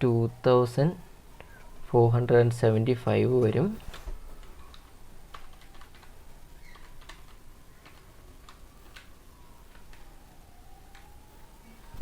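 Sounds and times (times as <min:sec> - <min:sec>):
thin faint whine: 0:00.0 - 0:12.0
light clicks and ticks: 0:10.9 - 0:11.1.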